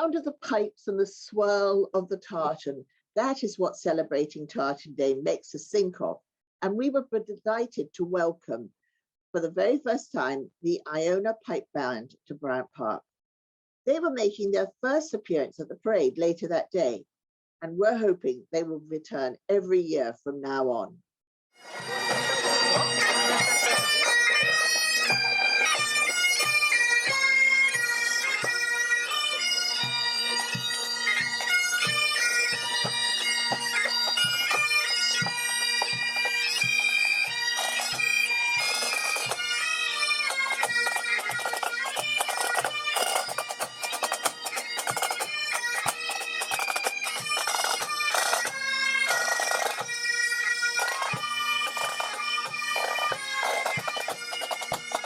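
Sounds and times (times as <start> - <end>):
drums beating: 21.6 - 28.6, 29.7 - 39.4, 50.8 - 55.0
bagpipes playing a tune: 21.6 - 55.0.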